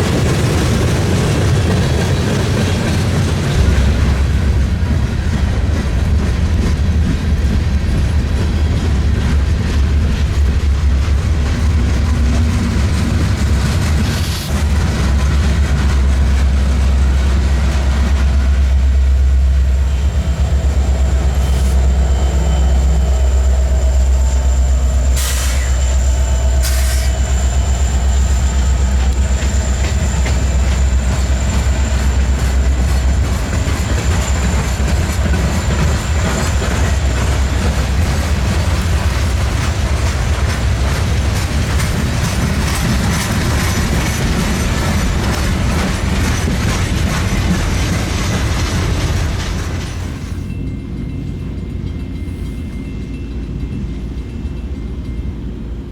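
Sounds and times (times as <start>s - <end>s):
train rumbling past: 0.0s - 55.9s
high wheel squeal: 19.7s - 39.0s
wheels clicking over rail joints: 26.6s - 50.4s.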